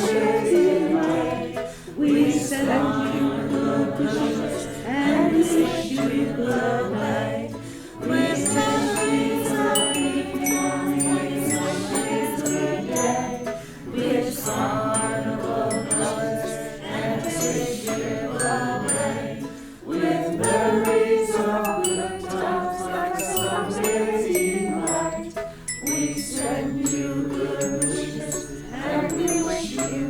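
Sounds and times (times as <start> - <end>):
choir singing: 0.0 - 30.0
tinkling bell notes: 8.0 - 30.0.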